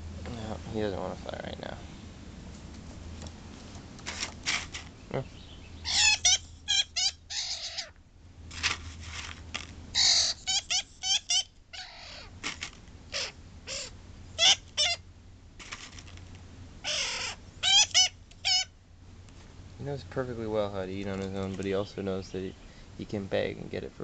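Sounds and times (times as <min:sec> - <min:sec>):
young bird begging calls: 0:05.0 - 0:08.0, 0:10.0 - 0:12.4, 0:13.1 - 0:15.1, 0:16.8 - 0:18.7.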